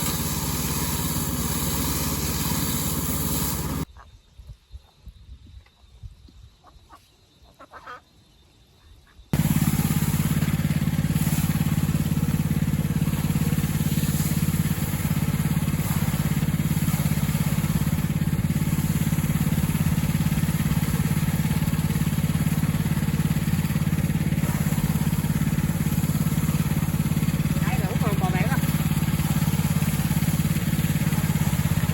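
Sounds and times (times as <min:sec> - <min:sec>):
small engine running: 0:00.0 - 0:03.9, 0:09.3 - 0:31.9.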